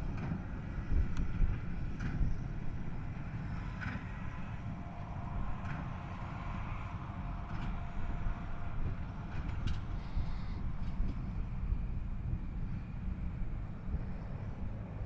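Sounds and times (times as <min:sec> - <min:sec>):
tractor engine rumble: 0:00.0 - 0:15.0.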